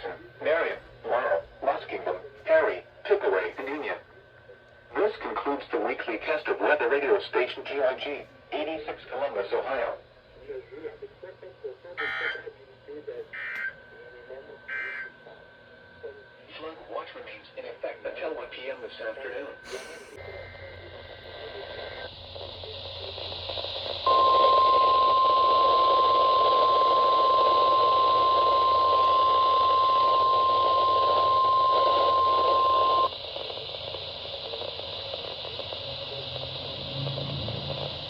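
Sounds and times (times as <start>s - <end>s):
radio static hiss: 0.0s - 38.0s
faint steady high tones: 10.6s - 38.0s
loud steady warning beep: 12.0s - 12.5s, 13.3s - 38.0s.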